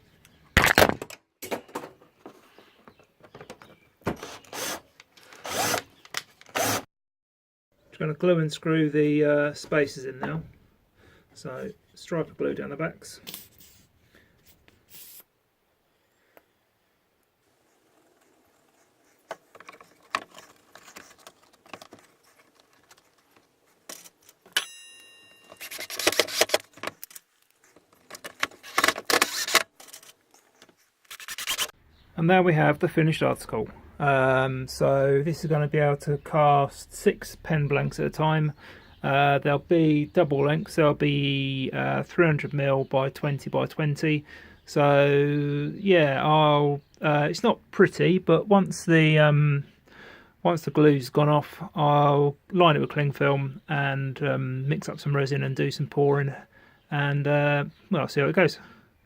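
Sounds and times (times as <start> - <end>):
drill driving screws into wood: 4.1 - 6.9
wood rubbing and handling: 17.5 - 24.6, 25.5 - 31.7.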